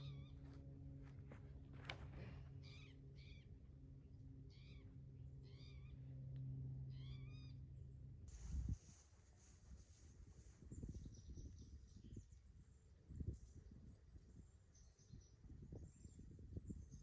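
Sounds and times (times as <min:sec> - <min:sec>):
steady low hum: 0:00.0 - 0:17.0
faint wavering animal calls: 0:04.4 - 0:06.2, 0:06.8 - 0:07.7.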